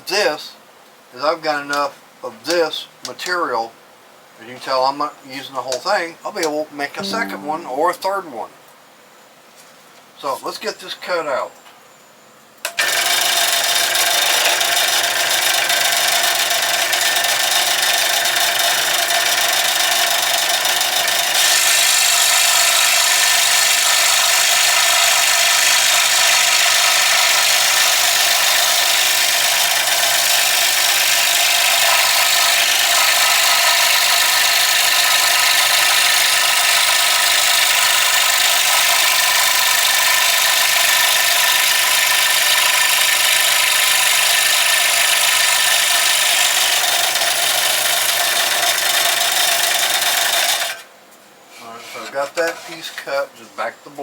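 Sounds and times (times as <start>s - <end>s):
scroll saw cutting: 12.7s - 50.8s.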